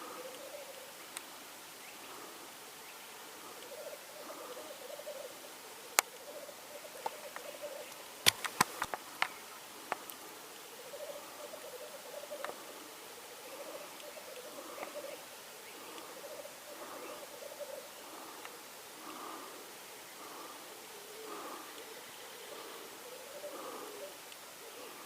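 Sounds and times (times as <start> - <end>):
grouse bubbling cooing song: 0.0 - 1.2, 3.3 - 25.0
sharp clicks: 8.2 - 10.2.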